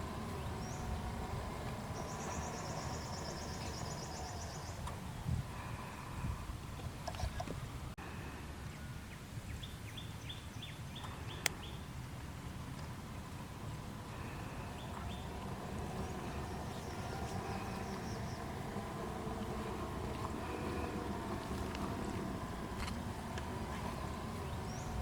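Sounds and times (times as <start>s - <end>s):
low outdoor rumble: 0.0s - 8.6s, 10.6s - 25.0s
bird chirping: 0.3s - 4.9s, 14.4s - 18.6s, 23.7s - 25.0s.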